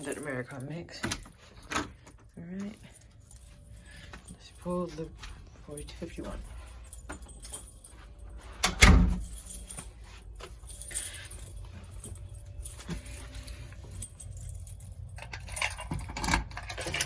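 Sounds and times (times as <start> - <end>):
keys jangling: 0.0 - 17.0
clicks and rattles: 15.0 - 17.0.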